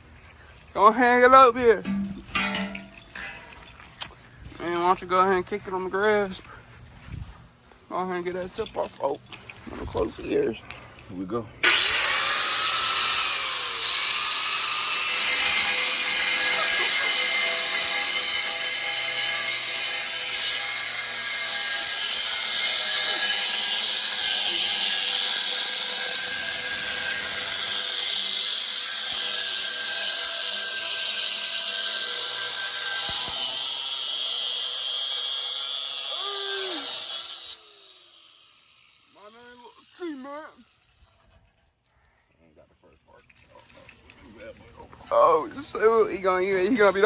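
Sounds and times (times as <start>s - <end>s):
angle grinder cutting steel: 1.8s - 3.3s, 11.6s - 41.2s.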